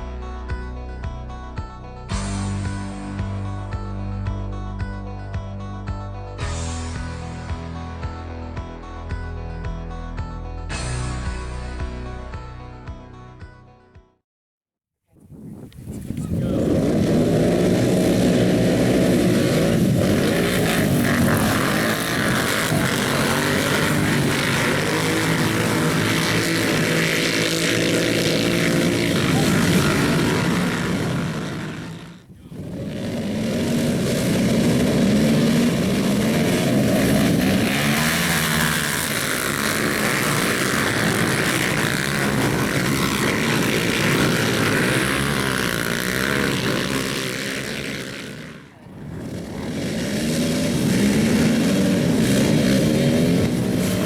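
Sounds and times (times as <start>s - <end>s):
racing atv engines revving: 15.8s - 54.0s.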